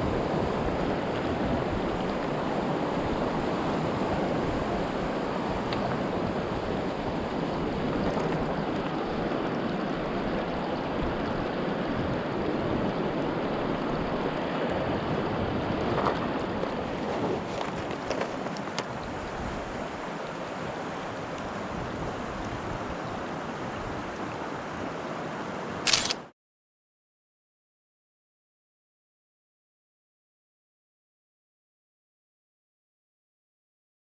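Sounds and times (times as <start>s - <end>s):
mountain stream rushing: 0.0s - 26.1s.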